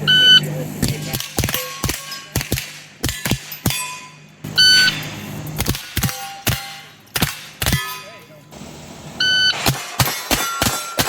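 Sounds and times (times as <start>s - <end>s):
shot timer beep: 0.1s - 0.5s, 4.6s - 5.0s, 9.2s - 9.6s
steel targets ringing: 0.8s - 8.6s, 9.2s - 11.0s
rifle shots: 9.5s - 11.0s.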